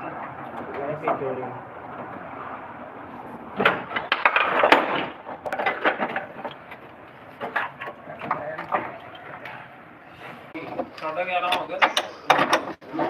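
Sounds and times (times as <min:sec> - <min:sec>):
knocks and clatter: 0:03.5 - 0:09.7, 0:10.6 - 0:13.0.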